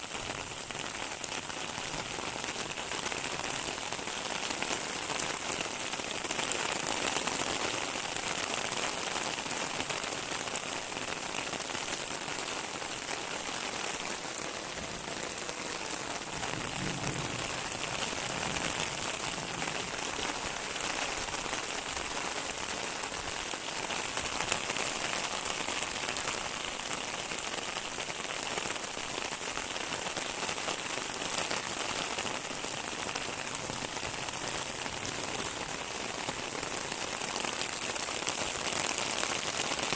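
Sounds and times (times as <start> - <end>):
rain pattering: 0.0 - 39.9.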